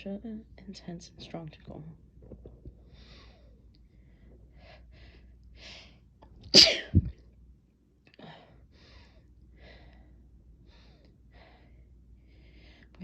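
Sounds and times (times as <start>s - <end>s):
loud sneeze: 6.5s - 7.1s
person breathing: 8.2s - 12.9s.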